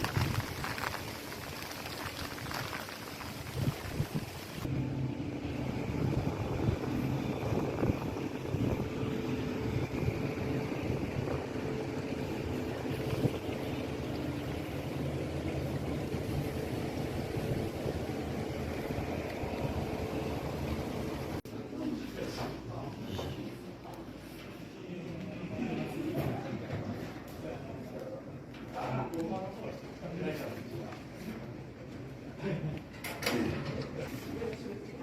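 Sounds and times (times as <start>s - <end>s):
engine hum: 0.0s - 21.4s
rumbling noise: 0.0s - 21.4s.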